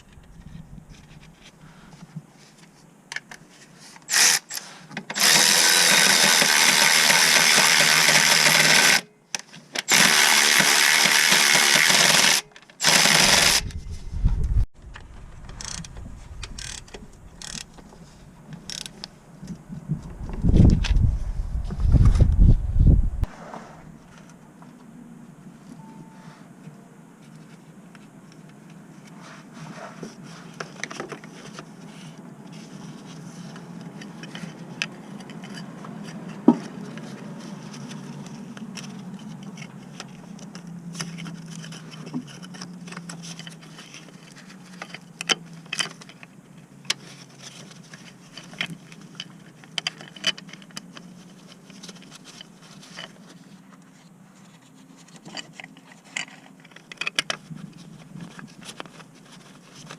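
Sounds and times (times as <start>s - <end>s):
tools clicking and knocking: 15.5s - 19.1s.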